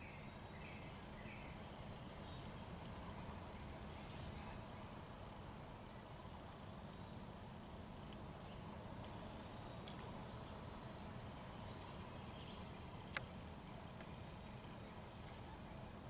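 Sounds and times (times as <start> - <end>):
insect high steady trill: 0.7 - 4.6, 7.9 - 12.3.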